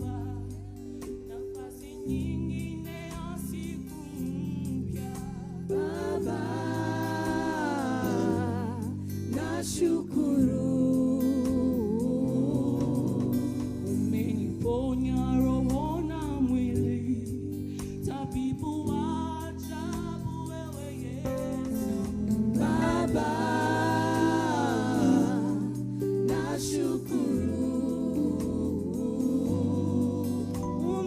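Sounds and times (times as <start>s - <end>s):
gospel choir singing: 0.0s - 31.0s
sustained instrumental backing: 2.6s - 15.1s, 21.3s - 31.0s.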